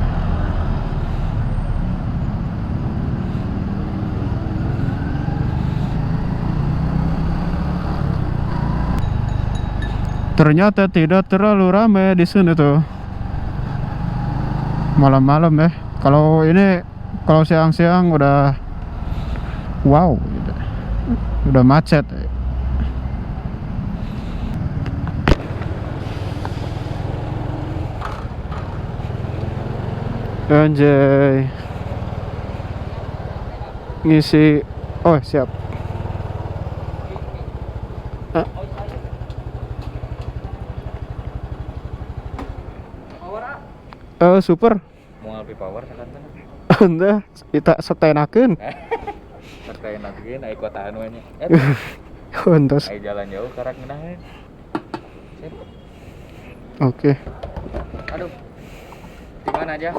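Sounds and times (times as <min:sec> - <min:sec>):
passing traffic: 0:00.0 - 0:59.9
road noise: 0:00.0 - 0:59.9
motorcycle engine running: 0:01.8 - 0:10.6, 0:11.6 - 0:17.3, 0:22.9 - 0:43.2.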